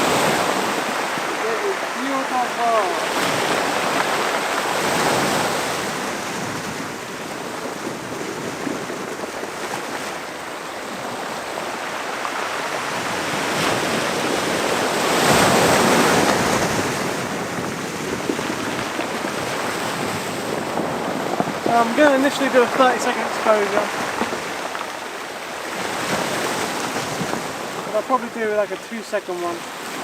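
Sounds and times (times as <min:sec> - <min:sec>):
sea surf breaking over rocks: 0:00.0 - 0:30.0.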